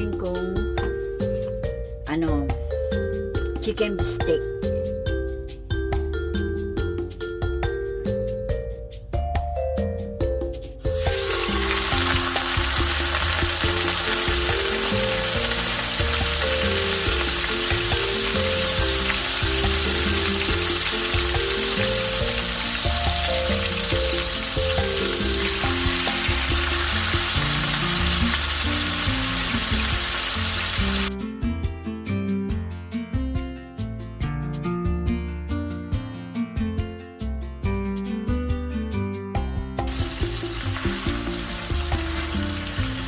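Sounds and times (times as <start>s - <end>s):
background music: 0.0s - 43.0s
chicken frying in hot oil: 11.0s - 31.1s, 39.9s - 43.0s.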